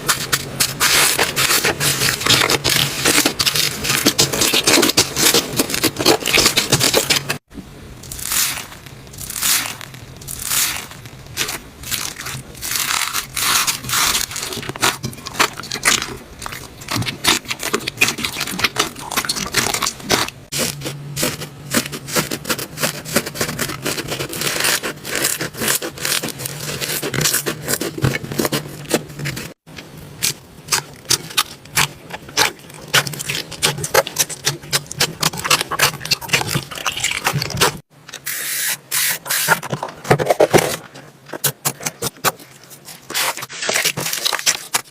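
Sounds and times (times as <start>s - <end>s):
hands squeezing crackling slime: 8.0s - 20.6s.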